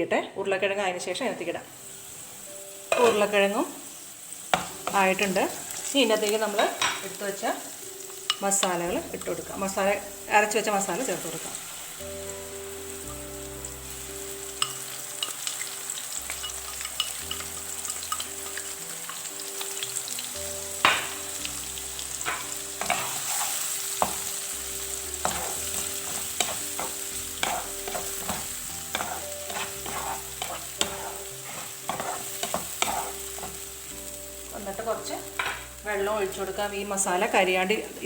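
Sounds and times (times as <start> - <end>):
food sizzling in hot oil: 0.4 - 38.0
spoon scraping a pan: 4.5 - 7.2, 14.6 - 15.7, 16.3 - 19.2, 22.2 - 33.7.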